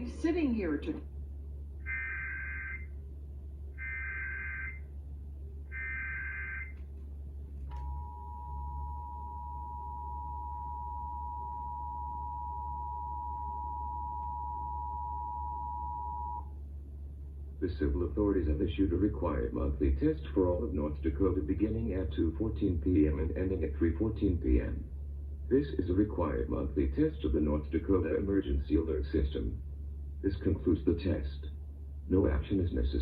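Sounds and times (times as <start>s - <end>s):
two-tone attention signal: 7.7s - 16.5s.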